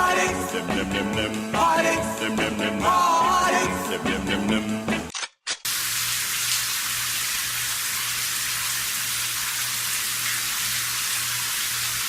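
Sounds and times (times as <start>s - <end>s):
water spraying hiss: 5.7s - 12.0s.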